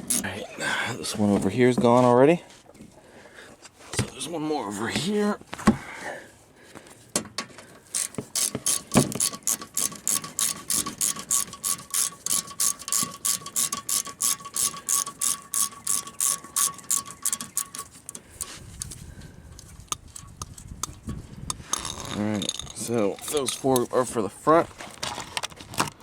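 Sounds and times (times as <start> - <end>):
socket ratchet clicking: 0.0 - 0.3, 7.9 - 19.0, 19.9 - 23.9.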